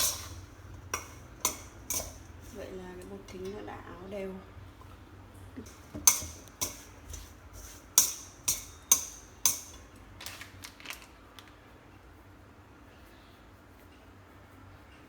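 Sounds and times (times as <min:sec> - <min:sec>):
utensils clinking against a bowl: 0:00.0 - 0:04.0, 0:05.6 - 0:10.6.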